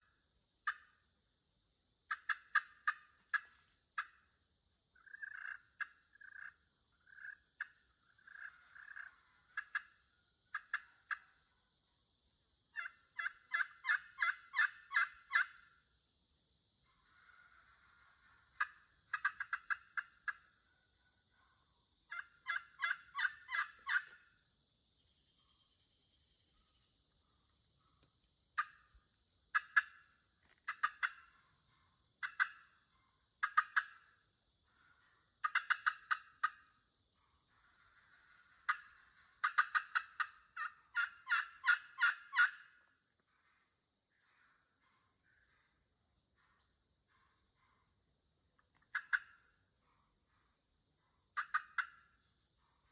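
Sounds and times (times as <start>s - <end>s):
turkeys yelping: 5.0s - 6.5s, 12.8s - 15.6s, 17.1s - 20.4s, 22.1s - 24.2s, 30.7s - 31.4s, 32.2s - 32.7s, 35.4s - 36.6s, 38.7s - 42.7s, 51.4s - 52.0s.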